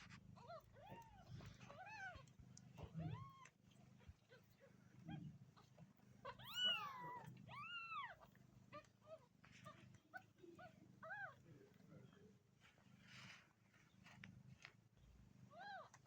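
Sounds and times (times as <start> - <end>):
cat meowing: 6.3 - 8.3.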